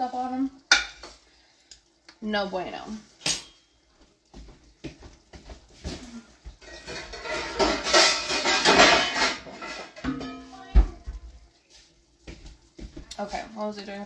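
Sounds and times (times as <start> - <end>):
dishes and utensils clinking: 0.7 - 1.2, 3.2 - 3.8, 5.9 - 11.2
clattering and rustling: 3.0 - 13.1.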